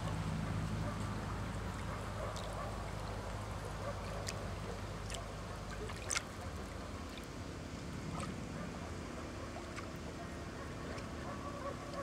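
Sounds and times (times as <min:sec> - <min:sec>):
lake water lapping: 0:00.0 - 0:12.0
sharp water splash: 0:05.0 - 0:06.4.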